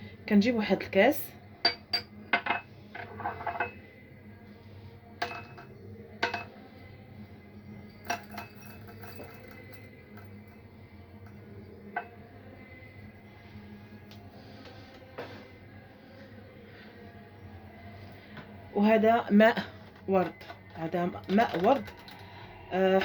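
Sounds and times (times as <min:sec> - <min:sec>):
glass clinking on hard surface: 0:01.6 - 0:03.9, 0:05.2 - 0:06.6, 0:07.9 - 0:10.6, 0:11.3 - 0:12.3.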